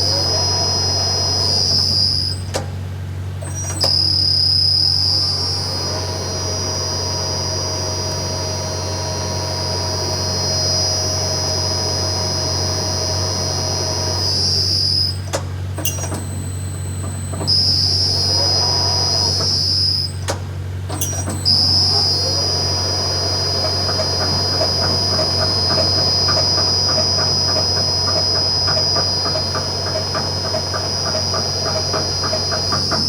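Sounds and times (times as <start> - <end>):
crane high-pitched whine: 0.0 - 33.0
regular mechanical clunking: 15.2 - 17.9, 23.6 - 33.0.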